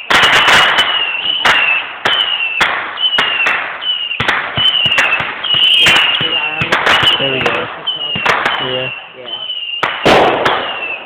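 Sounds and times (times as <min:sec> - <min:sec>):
fireworks bangs and cracks: 0:00.0 - 0:11.0
fireworks whistles: 0:00.0 - 0:11.0.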